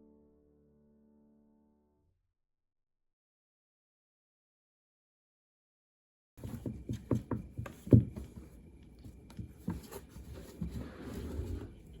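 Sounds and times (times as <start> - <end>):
light taps and knocks: 6.4 - 10.8
soft rustling: 6.4 - 12.0.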